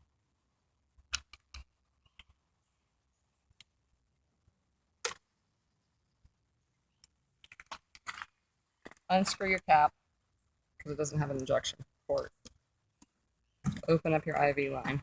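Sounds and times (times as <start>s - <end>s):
faint plastic clicks and taps: 11.7s - 13.9s.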